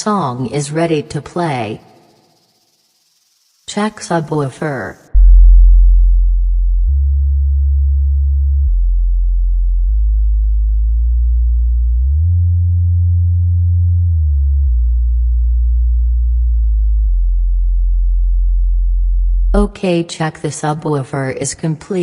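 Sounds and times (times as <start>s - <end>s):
low bass test tones: 5.1s - 19.7s.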